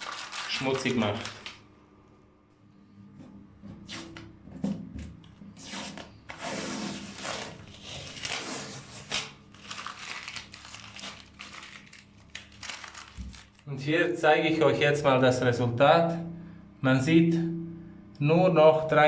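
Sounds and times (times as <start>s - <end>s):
masking tape ripping: 0.0s - 1.6s, 5.6s - 13.6s
paper crumpling: 0.0s - 1.6s, 5.9s - 13.7s.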